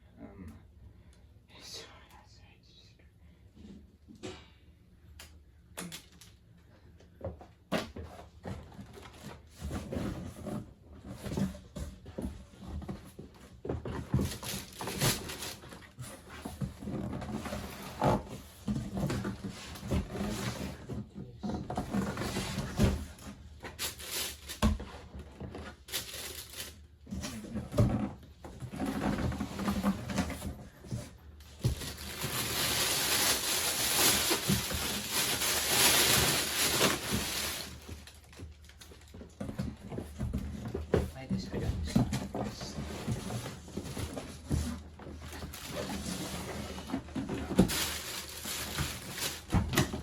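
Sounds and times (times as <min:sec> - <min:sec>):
packaging rustling: 0:25.8 - 0:26.9, 0:31.4 - 0:39.2, 0:43.0 - 0:50.0.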